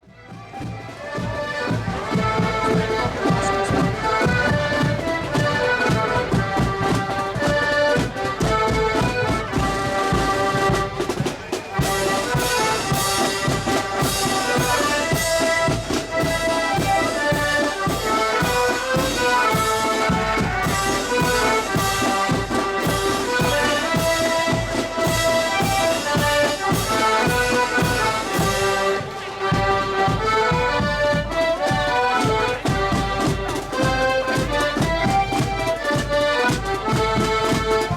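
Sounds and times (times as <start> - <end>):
accordion band playing a march: 0.0 - 37.9
drum beat with cymbal and snare: 8.0 - 31.8.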